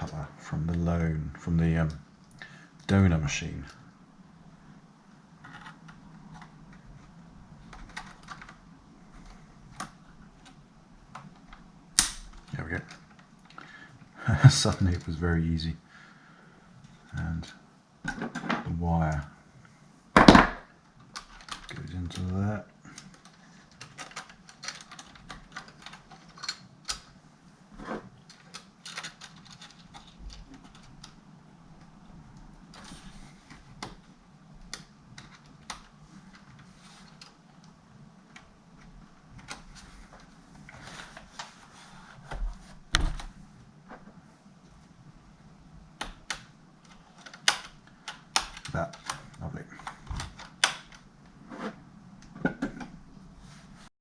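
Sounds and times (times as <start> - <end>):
plastic laptop parts clicking: 5.4 - 6.9, 7.6 - 13.6, 21.0 - 27.1, 28.2 - 31.2, 34.6 - 39.8, 46.0 - 51.0
sharp plastic click: 12.0 - 12.3.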